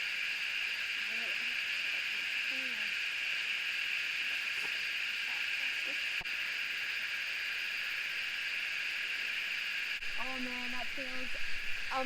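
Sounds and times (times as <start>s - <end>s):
insect chorus drone: 0.0s - 12.0s.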